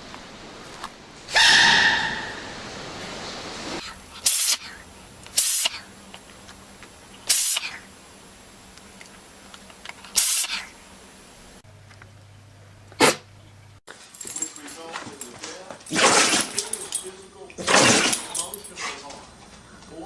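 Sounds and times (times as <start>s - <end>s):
animal sneezing: 11.8s - 13.8s.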